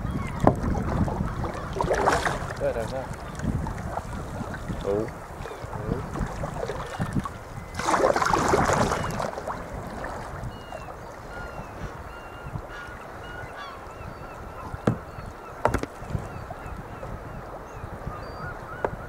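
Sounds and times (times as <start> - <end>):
seabird calls: 0.0 - 19.0
loud rush of water: 4.4 - 10.6.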